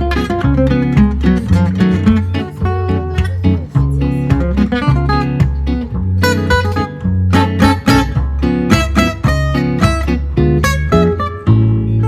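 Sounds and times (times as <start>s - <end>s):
acoustic guitar music: 0.0s - 12.0s.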